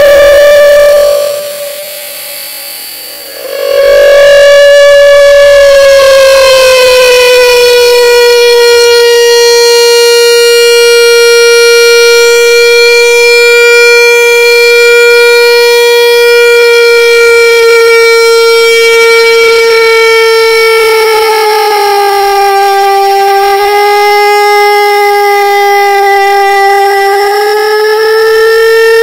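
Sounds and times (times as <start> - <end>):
slowed-down crying wail: 3.2 - 9.9, 20.6 - 29.0.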